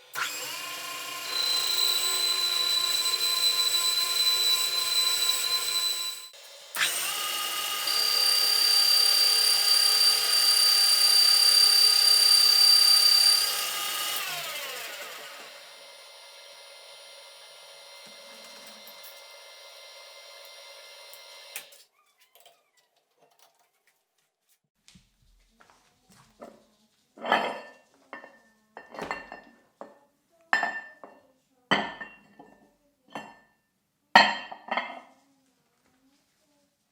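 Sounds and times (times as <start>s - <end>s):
metal lathe whining: 0.0s - 21.7s.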